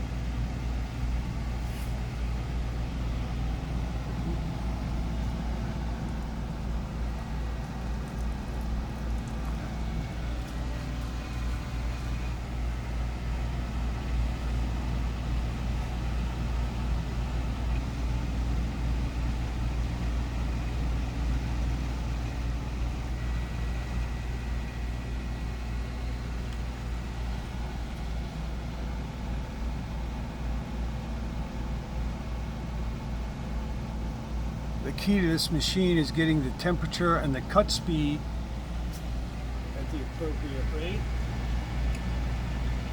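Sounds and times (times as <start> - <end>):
stepper motors humming: 0.0 - 42.9.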